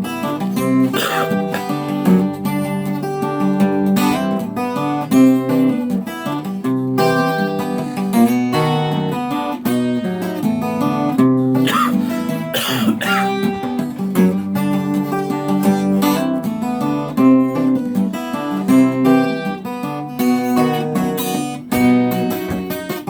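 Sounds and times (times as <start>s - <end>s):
acoustic guitar playing: 0.0s - 23.0s
person coughing: 0.9s - 1.9s, 11.6s - 13.4s.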